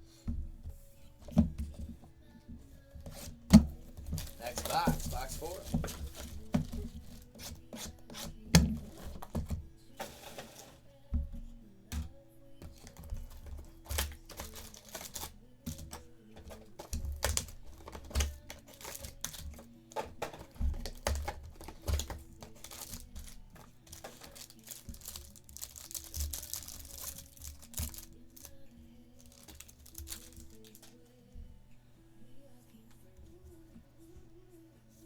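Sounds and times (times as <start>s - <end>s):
faint background music: 0.0s - 35.0s
plastic wrappers tearing and crinkling: 3.1s - 9.4s, 12.7s - 28.6s, 29.2s - 31.0s
cards and box clicking: 4.0s - 10.7s, 12.6s - 28.5s, 29.2s - 31.0s.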